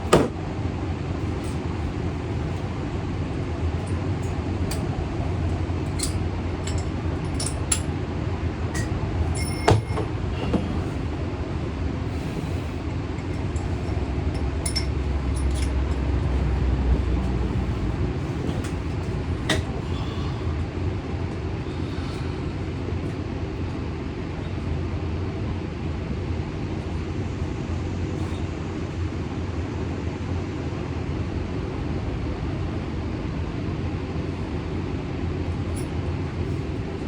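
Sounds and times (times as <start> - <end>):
steady low rumble: 0.0 - 37.0
ringing metal clink: 8.8 - 10.1, 13.8 - 15.8.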